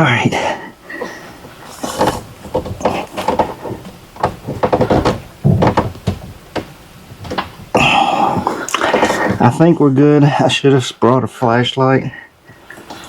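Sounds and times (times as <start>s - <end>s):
rubber hose knocks and rubbing: 1.0s - 9.5s.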